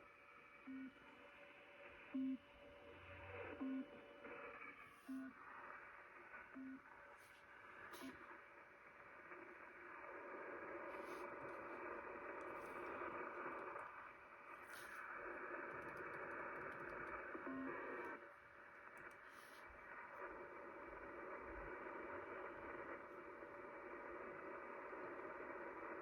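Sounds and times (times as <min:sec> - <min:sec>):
faint radio hiss: 0:05.3 - 0:26.0.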